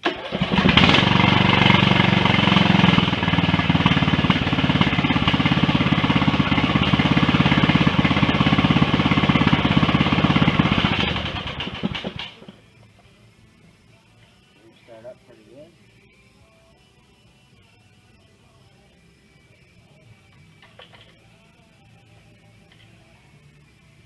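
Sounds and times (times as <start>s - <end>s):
lawn tractor engine running: 0.0s - 13.1s.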